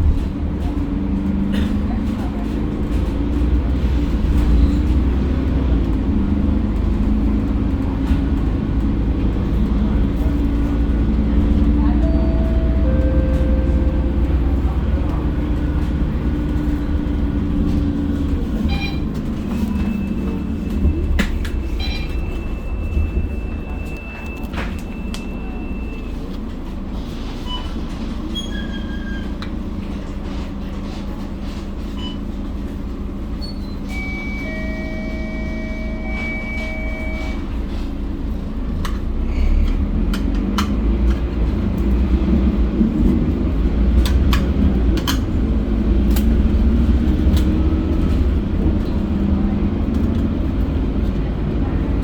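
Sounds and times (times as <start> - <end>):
bus diesel engine running: 0.0 - 52.0
two-pitch electronic tone: 33.9 - 37.5.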